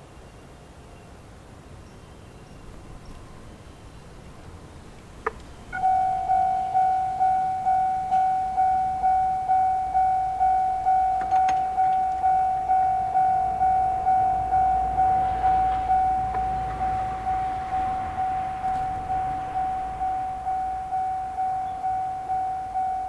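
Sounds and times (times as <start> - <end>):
level crossing warning bell: 5.3 - 23.0.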